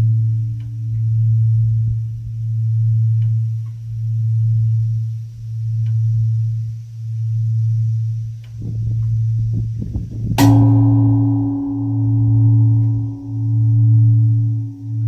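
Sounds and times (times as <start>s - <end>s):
temple bell humming: 0.0s - 15.0s
temple bell struck: 8.7s - 15.0s.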